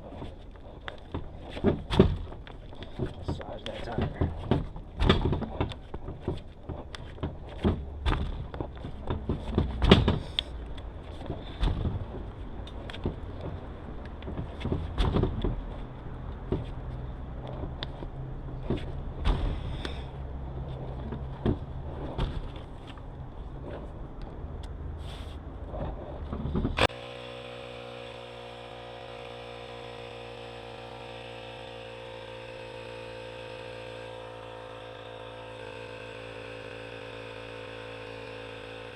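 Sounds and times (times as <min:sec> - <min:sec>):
hands knocking and rubbing tire: 0:00.0 - 0:24.0.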